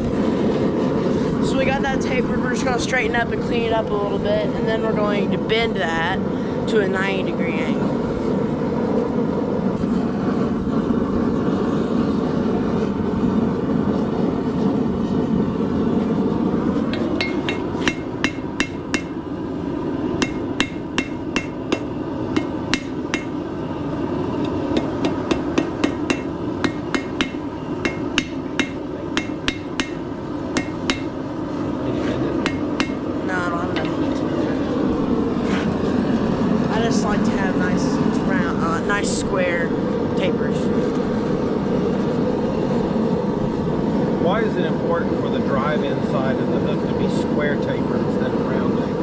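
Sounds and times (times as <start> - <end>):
steady rushing roar: 0.0 - 49.0
hammer striking steel on anvil: 17.0 - 19.2, 20.2 - 23.4, 24.8 - 30.0, 30.6 - 31.1, 32.4 - 33.0.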